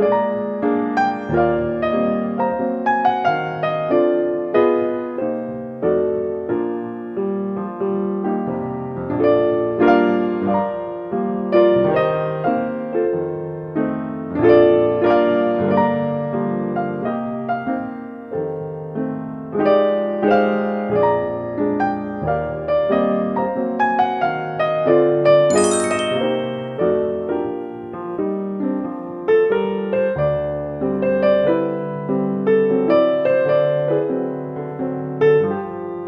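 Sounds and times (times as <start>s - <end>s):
solo piano music: 0.0s - 36.0s.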